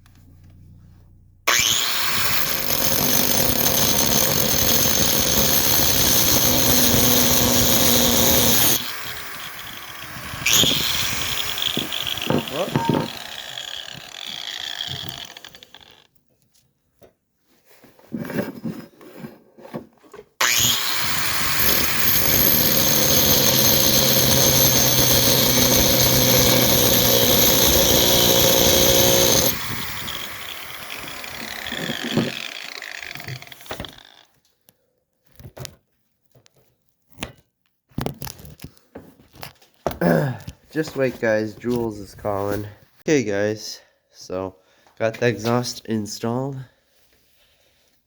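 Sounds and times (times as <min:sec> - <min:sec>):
power tool whining: 0:01.5 - 0:16.1, 0:20.4 - 0:34.4.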